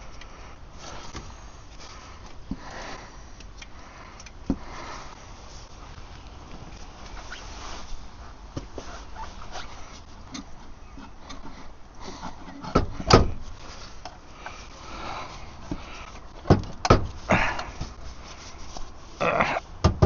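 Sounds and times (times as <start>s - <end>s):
scraping rustle: 5.0s - 16.4s, 17.0s - 19.6s.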